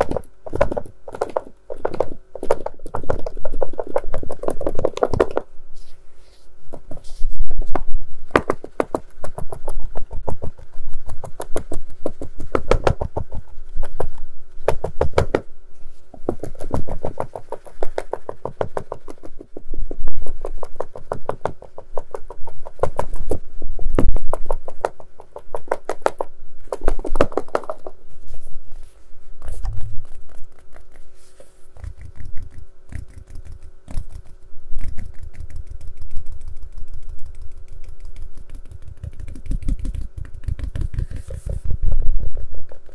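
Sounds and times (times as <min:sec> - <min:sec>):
fast tapping on hard case: 0:00.0 - 0:05.5, 0:07.8 - 0:15.4, 0:16.2 - 0:19.5, 0:20.2 - 0:28.0, 0:34.8 - 0:42.9
faint steady hum: 0:00.0 - 0:42.9.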